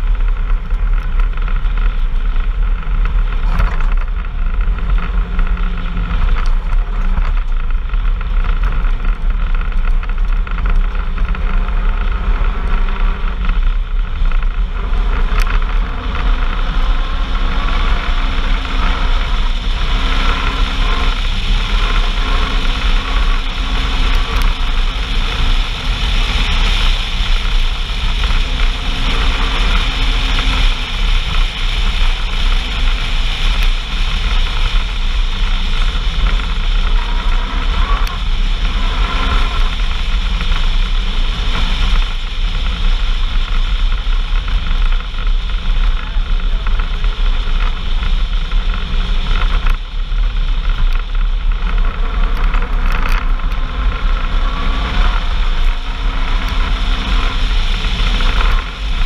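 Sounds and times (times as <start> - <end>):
vehicle engine running: 0.0 - 59.0
wind and road noise: 0.0 - 59.0.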